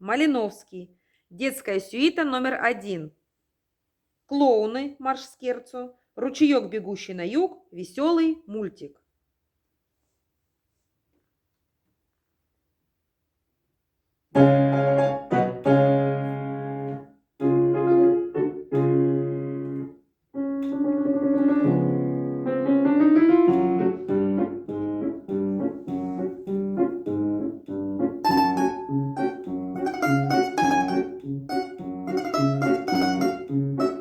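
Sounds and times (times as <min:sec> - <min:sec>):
piano music: 0:14.4 - 0:34.0.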